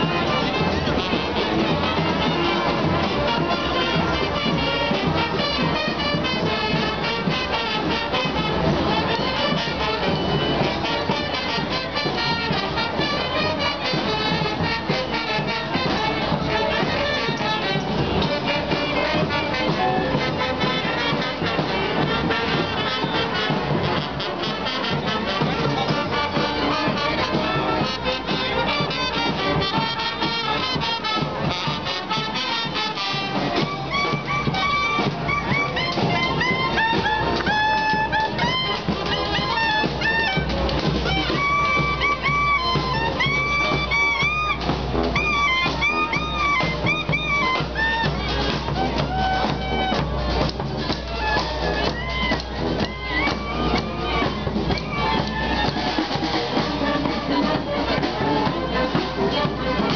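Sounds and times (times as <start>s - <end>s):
brass band playing: 0.0s - 59.9s.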